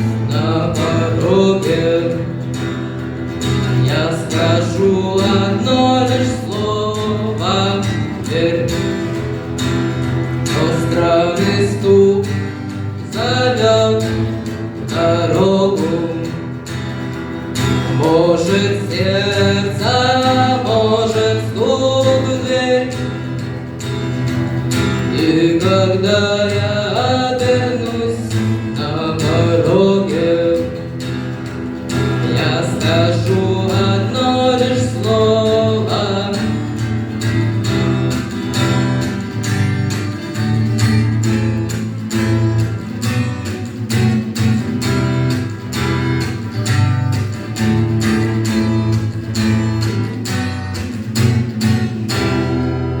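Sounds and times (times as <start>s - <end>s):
acoustic guitar strumming: 0.0s - 53.0s
person singing: 3.7s - 9.4s, 18.0s - 23.4s, 25.1s - 31.0s, 32.2s - 37.0s.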